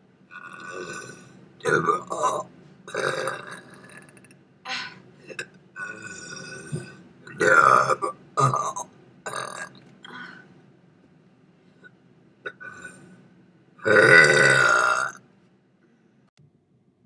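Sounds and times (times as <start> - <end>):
person burping: 0.4 - 9.7, 12.4 - 13.0, 13.8 - 15.2.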